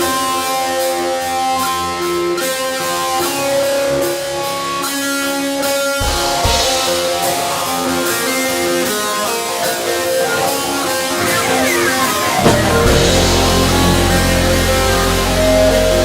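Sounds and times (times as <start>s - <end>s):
instrumental rock guitars: 0.0s - 16.0s
deep drum hits: 12.4s - 15.5s.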